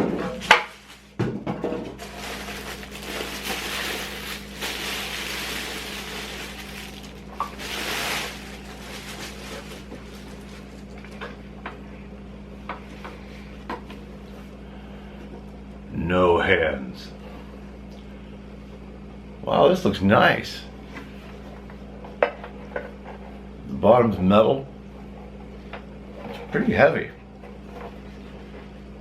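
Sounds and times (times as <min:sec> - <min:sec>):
steady low hum: 0:00.0 - 0:29.0
packing material rustling: 0:02.0 - 0:11.2.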